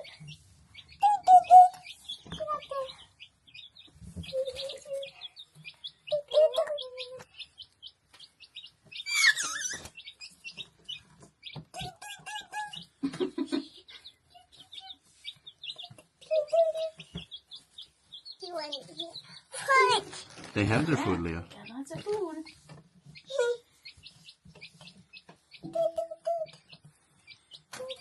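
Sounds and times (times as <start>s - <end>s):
baby chicks peeping: 0.0s - 28.0s
louder lower chick calls: 8.9s - 10.2s.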